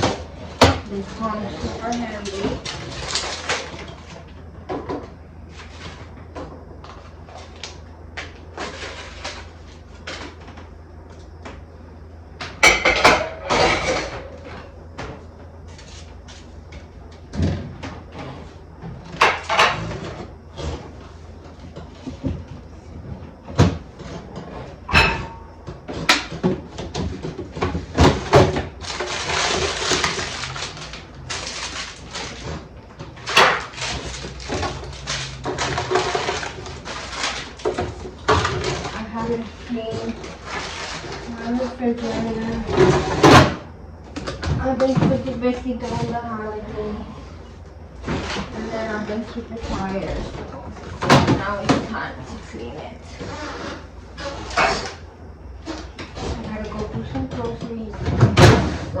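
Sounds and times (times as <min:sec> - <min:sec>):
refrigerator low hum: 0:00.0 - 0:59.0
containers knocking and clattering: 0:12.5 - 0:15.1.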